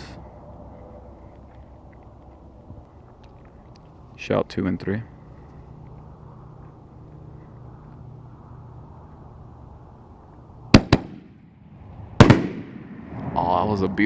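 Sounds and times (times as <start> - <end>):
firework bangs: 10.7 - 13.6.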